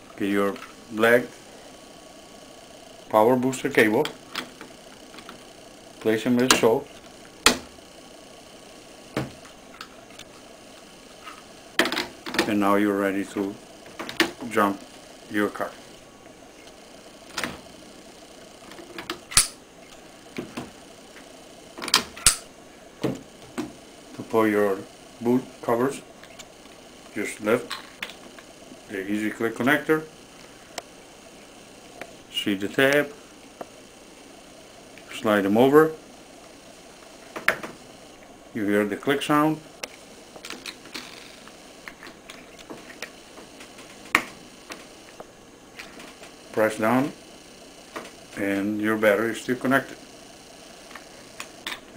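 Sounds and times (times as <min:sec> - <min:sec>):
loud sharp cover snapping click: 0:19.3 - 0:19.6.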